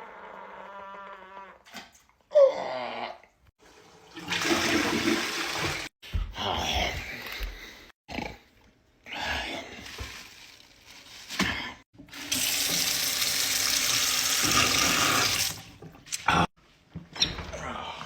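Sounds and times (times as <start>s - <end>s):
tap water running into sink: 12.0s - 15.8s.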